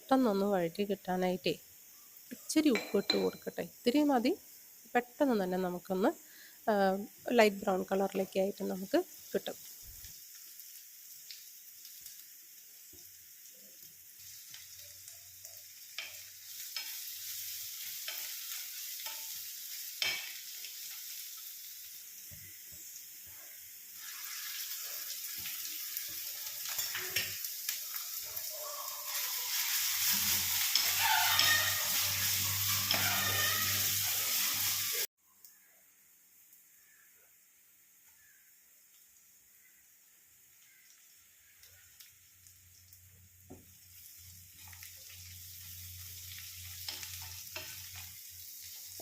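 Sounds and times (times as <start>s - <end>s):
onions sizzling in a pan: 0.0s - 49.0s
spoon knocking and scraping pan: 2.6s - 3.5s, 20.0s - 20.4s, 29.9s - 34.7s.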